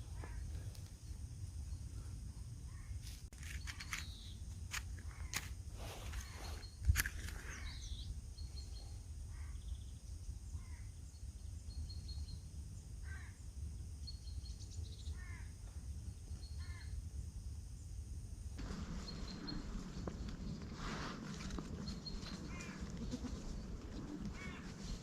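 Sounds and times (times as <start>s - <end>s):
harsh bird calls: 5.0s - 10.0s, 18.6s - 25.0s
steady low rumble: 16.9s - 25.0s
faint high bird chirps: 18.8s - 20.7s.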